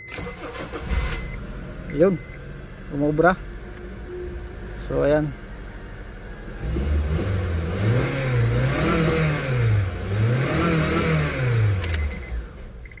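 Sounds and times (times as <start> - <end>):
car engine revving: 0.2 - 12.8
sharp clicks: 11.8 - 12.2.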